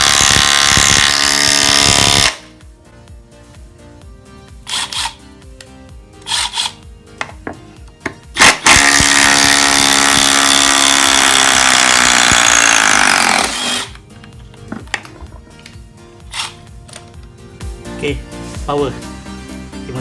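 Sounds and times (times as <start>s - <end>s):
impact driver hammering: 0.0s - 2.4s, 6.3s - 7.4s, 8.4s - 14.0s
impact driver motor spinning: 0.0s - 2.5s, 4.7s - 5.2s, 6.2s - 6.8s, 8.4s - 14.0s, 16.3s - 16.6s.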